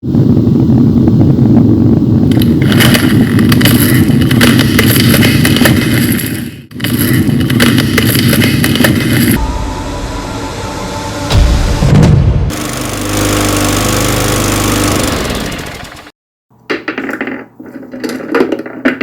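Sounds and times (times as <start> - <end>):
deep earthquake rumble: 0.0 - 6.1
crackling and clattering: 2.3 - 9.4, 16.7 - 19.0.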